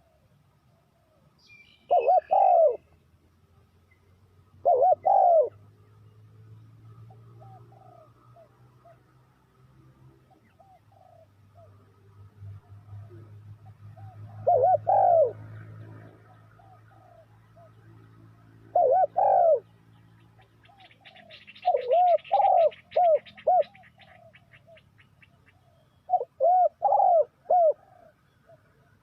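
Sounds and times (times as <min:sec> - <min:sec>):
dove cooing: 0:01.9 - 0:02.9, 0:04.6 - 0:05.6, 0:07.2 - 0:09.1, 0:10.2 - 0:11.9, 0:12.8 - 0:19.7, 0:20.4 - 0:29.0.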